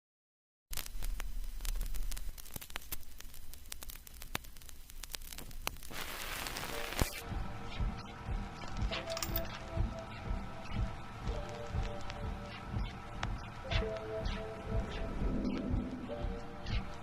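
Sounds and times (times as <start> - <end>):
clicks and pops: 0.7 - 7.2
crackling static hiss: 0.7 - 17.0
music: 6.0 - 17.0
low hum: 6.9 - 17.0.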